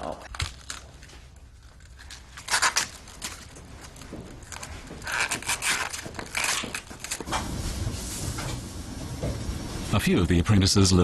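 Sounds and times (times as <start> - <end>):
rubbing and scraping handling noises: 0.9 - 8.4.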